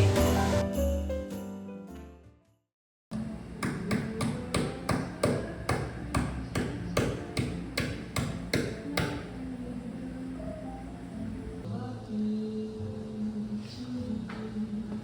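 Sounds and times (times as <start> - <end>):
background music: 0.0 - 2.3.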